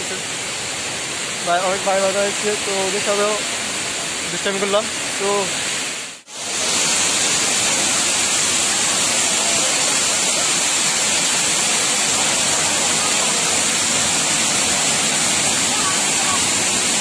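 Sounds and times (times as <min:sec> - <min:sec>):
waterfall roaring: 0:00.0 - 0:17.0.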